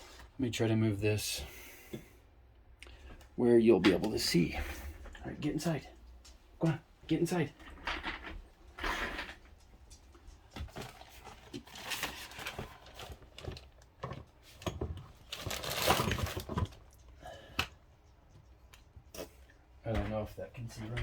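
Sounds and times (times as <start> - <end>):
rustling: 7.6 - 17.0.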